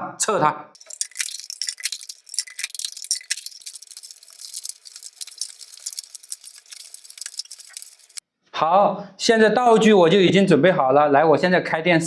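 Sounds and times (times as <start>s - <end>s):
plastic bottles clicking and crinkling: 0.8s - 8.2s.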